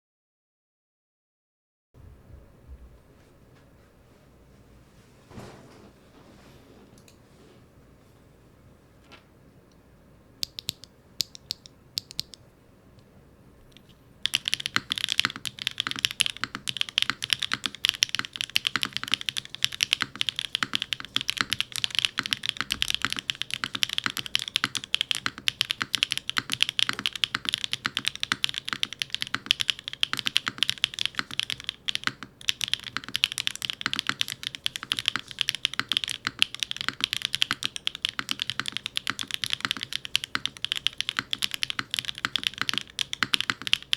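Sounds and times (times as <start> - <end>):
mechanical keyboard typing: 10.4 - 12.4, 14.2 - 43.9.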